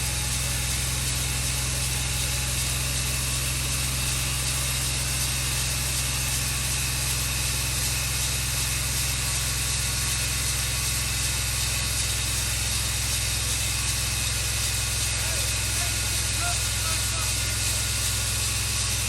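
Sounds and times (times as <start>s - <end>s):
engine drone: 0.0s - 19.0s
band saw blade hiss: 14.6s - 19.0s.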